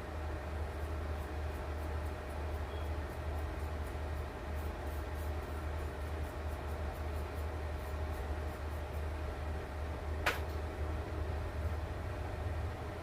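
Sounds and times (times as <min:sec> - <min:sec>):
low machine hum: 0:00.0 - 0:13.0
sharp click: 0:10.2 - 0:10.6.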